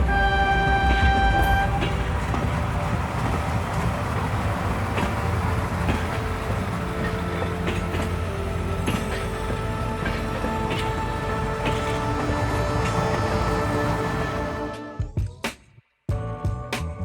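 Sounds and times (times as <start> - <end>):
train horn toot: 0.0 - 4.0, 5.7 - 15.0
running train rumble: 0.0 - 15.2.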